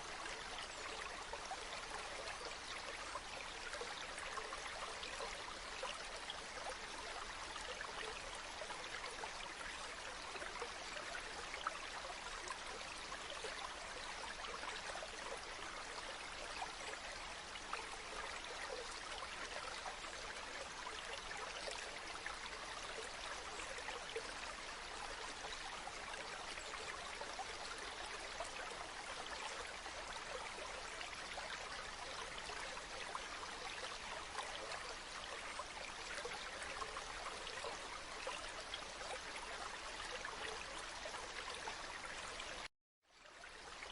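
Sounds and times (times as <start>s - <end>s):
water splashes and trickles: 0.0s - 43.9s.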